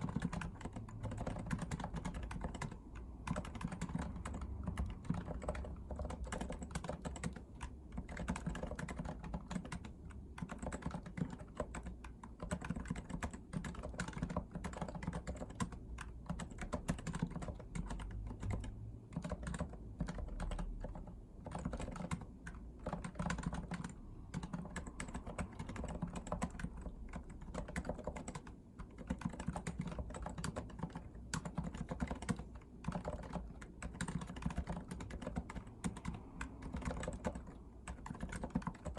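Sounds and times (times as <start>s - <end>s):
keyboard typing: 0.0s - 38.9s.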